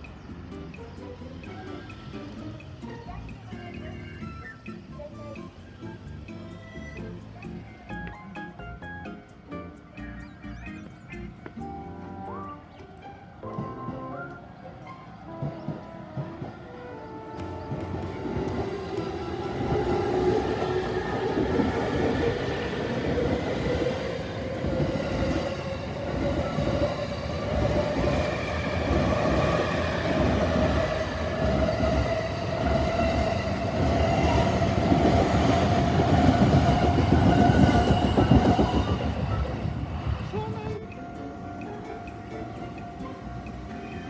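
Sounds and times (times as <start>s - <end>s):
train wheels clattering over rails: 13.0s - 40.8s.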